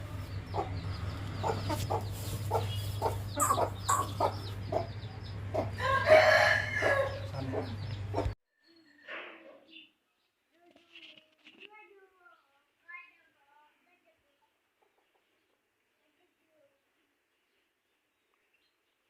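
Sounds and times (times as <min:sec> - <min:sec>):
chickens clucking: 0:00.0 - 0:08.4, 0:14.8 - 0:15.6
rooster crowing: 0:05.7 - 0:07.8.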